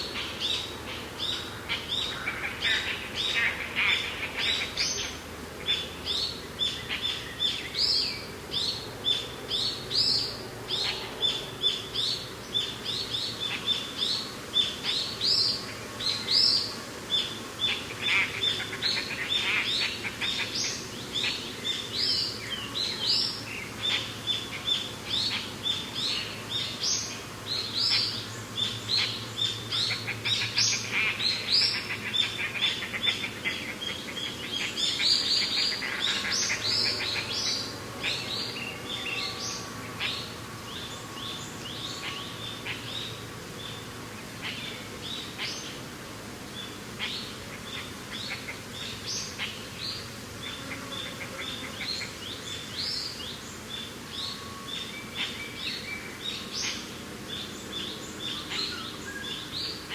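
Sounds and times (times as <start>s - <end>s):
songbirds chirping: 0.0s - 59.9s.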